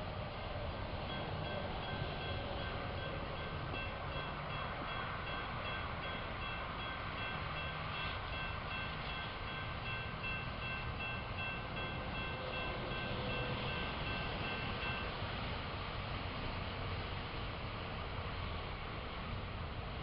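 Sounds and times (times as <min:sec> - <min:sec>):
train rumbling past: 0:00.0 - 0:20.0
crossing signal bell ringing: 0:01.1 - 0:15.2.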